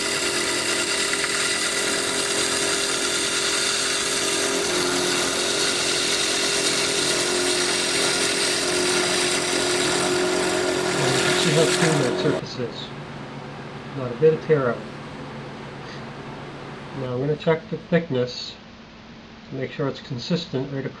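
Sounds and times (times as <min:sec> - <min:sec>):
chisel cutting wood: 0:00.0 - 0:13.1
lathe humming: 0:00.0 - 0:17.1.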